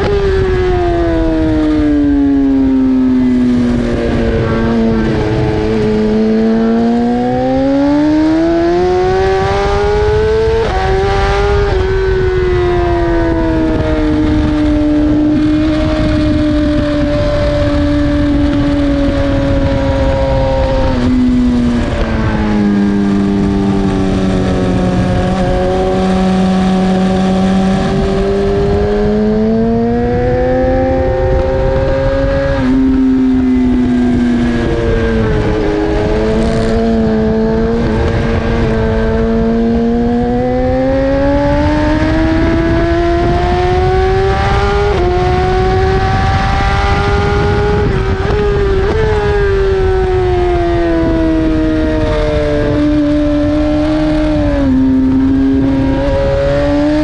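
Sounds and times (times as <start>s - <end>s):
sport bike engine running hard: 0.0s - 57.0s
wind noise: 0.0s - 57.0s.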